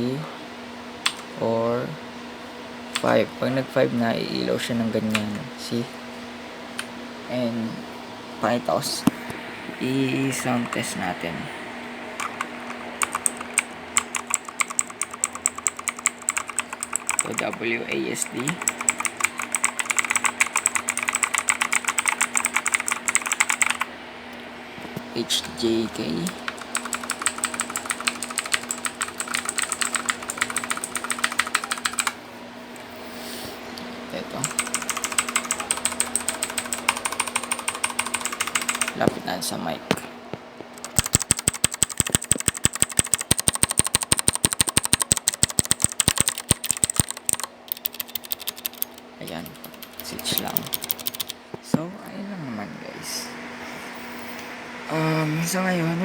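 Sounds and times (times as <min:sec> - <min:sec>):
mechanical keyboard clicking: 0:12.2 - 0:17.6, 0:18.2 - 0:23.8, 0:26.2 - 0:32.2, 0:34.4 - 0:39.1, 0:40.8 - 0:51.4.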